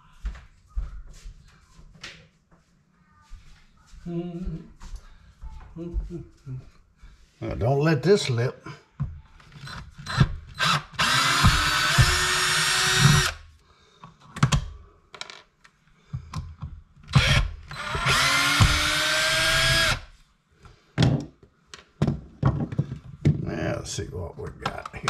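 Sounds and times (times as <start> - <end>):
power drill-driver whining: 9.5 - 13.5, 17.1 - 20.1.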